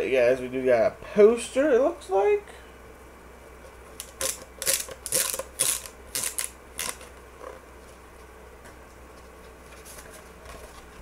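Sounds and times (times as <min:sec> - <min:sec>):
poster paper rustling and crinkling: 0:09.2 - 0:11.0.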